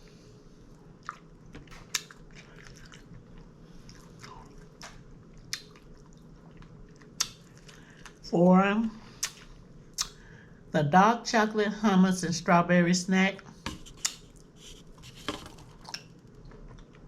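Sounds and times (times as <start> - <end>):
person chewing: 1.0 - 8.2, 13.8 - 17.0
wet mouth clicks: 7.2 - 7.4, 10.0 - 10.2, 13.9 - 14.2.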